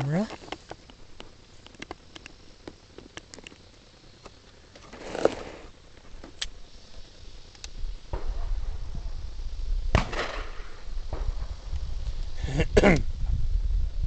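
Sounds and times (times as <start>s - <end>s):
handling clicks and scrapes: 0.0s - 6.6s.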